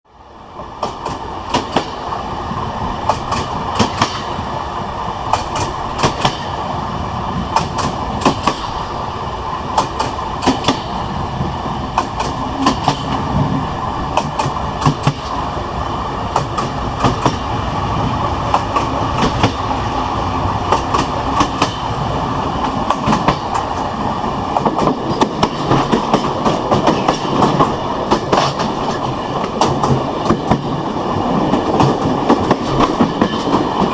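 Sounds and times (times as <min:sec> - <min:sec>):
train rumbling: 0:00.1 - 0:33.9
wheels clacking over rail joints: 0:00.8 - 0:02.1, 0:03.0 - 0:04.5, 0:05.3 - 0:06.6, 0:07.5 - 0:08.8, 0:09.7 - 0:11.0, 0:11.9 - 0:13.5, 0:14.1 - 0:15.5, 0:16.3 - 0:17.6, 0:18.4 - 0:19.8, 0:20.6 - 0:33.9.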